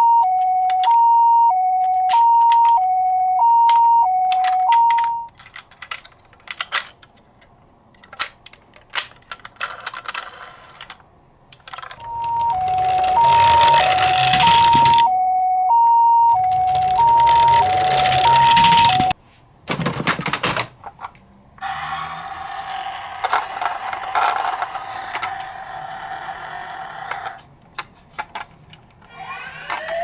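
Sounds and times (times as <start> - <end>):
toy two-tone siren: 0.0 - 5.3, 12.0 - 19.2, 21.6 - 27.4, 29.1 - 30.0.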